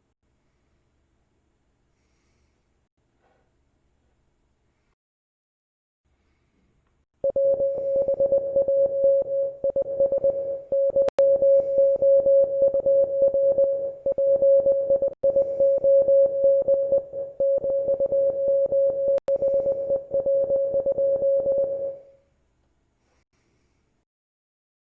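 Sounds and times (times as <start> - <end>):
morse code beeping: 7.2 - 22.0.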